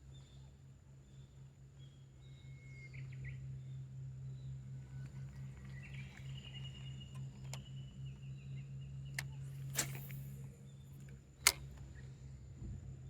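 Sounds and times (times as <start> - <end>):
steady low hum: 0.0 - 13.0
sharp clicks: 9.1 - 11.9.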